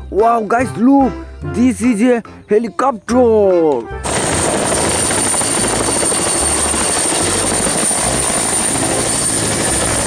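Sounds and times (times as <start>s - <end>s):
helicopter rotor and engine: 4.0s - 10.0s.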